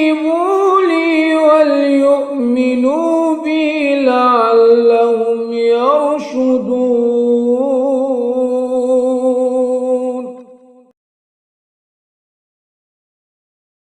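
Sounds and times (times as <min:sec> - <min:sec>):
man reciting melodically: 0:00.0 - 0:10.6.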